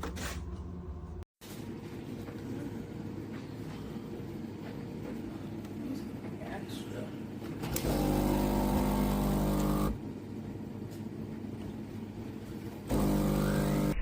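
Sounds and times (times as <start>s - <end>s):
espresso machine pump buzzing: 7.7s - 10.1s, 12.8s - 14.0s.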